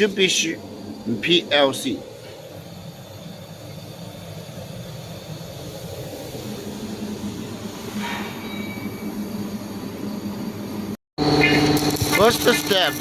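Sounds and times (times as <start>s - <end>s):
machine motors humming: 3.7s - 13.0s.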